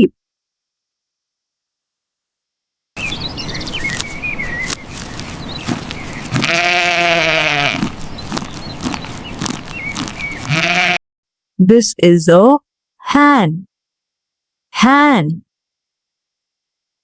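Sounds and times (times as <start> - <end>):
sheep bleating: 6.2 - 8.0, 10.3 - 11.0.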